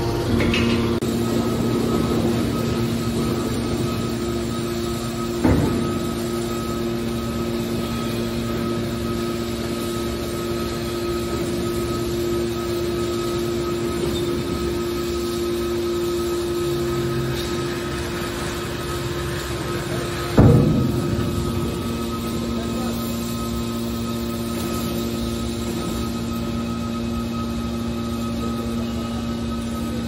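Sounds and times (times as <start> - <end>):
baler motor humming: 0.0 - 30.0
sharp metallic clank: 0.3 - 1.0, 20.3 - 23.9.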